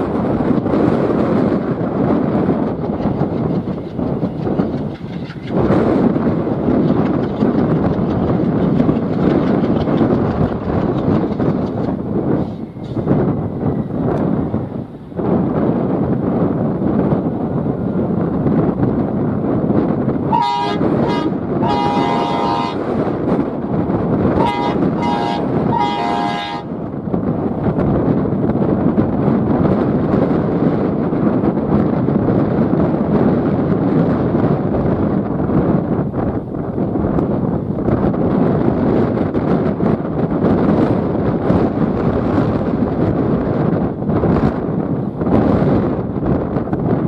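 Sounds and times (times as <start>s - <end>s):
train wheels clattering on rails: 0.0s - 14.5s
steady rumble: 0.0s - 47.0s
train horn blasts: 20.3s - 22.9s, 24.4s - 26.7s.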